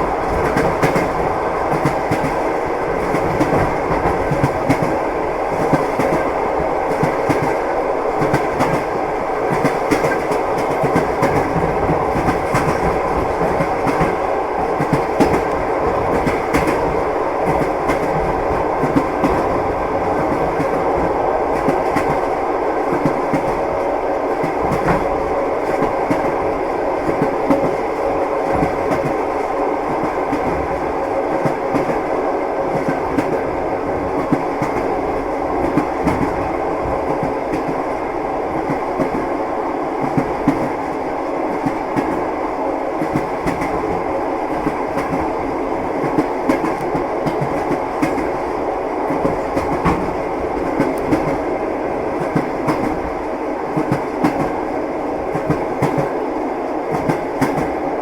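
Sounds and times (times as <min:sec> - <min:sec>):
railway carriage rumble: 0:00.0 - 0:58.0.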